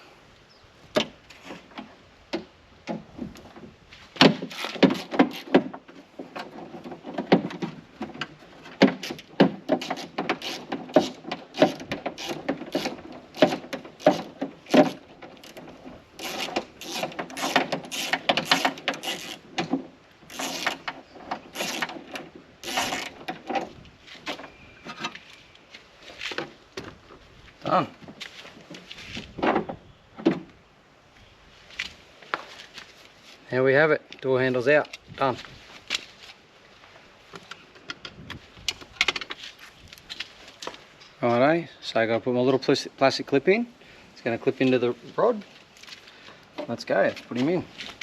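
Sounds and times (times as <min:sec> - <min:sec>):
ratchet clicking: 0:09.8 - 0:15.6, 0:16.2 - 0:19.4, 0:20.3 - 0:22.0.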